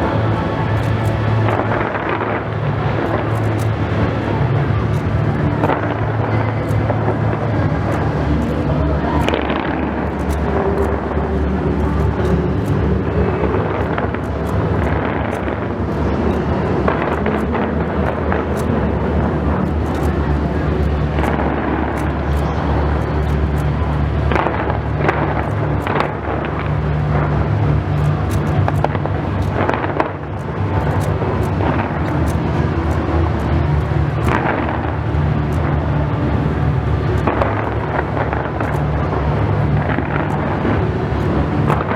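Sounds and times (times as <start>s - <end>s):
fireworks bangs and crackles: 34.2s - 35.3s.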